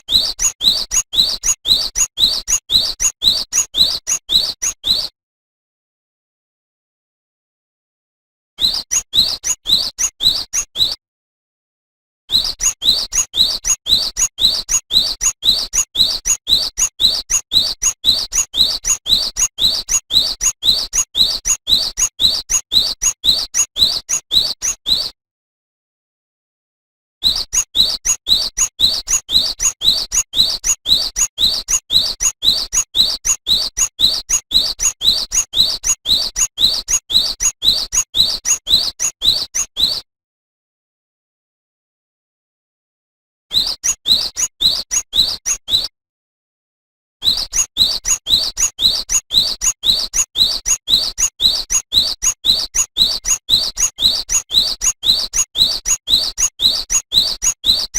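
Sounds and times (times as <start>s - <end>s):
bird singing whistled notes: 0.0s - 5.2s, 8.6s - 11.0s, 12.3s - 25.2s, 27.2s - 40.1s, 43.5s - 45.9s, 47.2s - 57.9s.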